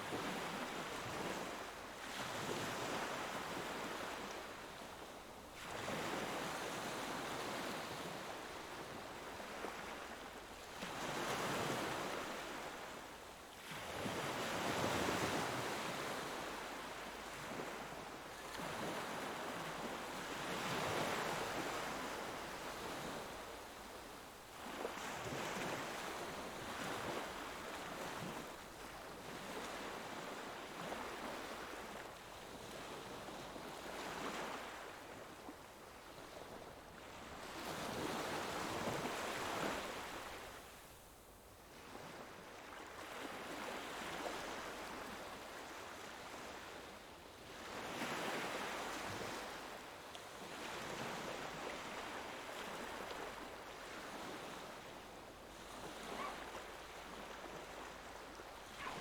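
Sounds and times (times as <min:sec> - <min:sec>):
ocean waves breaking on shore: 0:50.4 - 0:59.0.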